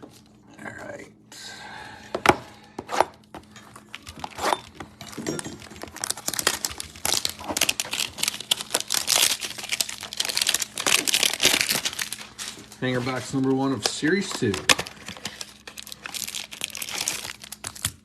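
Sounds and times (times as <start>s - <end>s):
plastic wrapping crinkling and tearing: 3.8s - 18.0s.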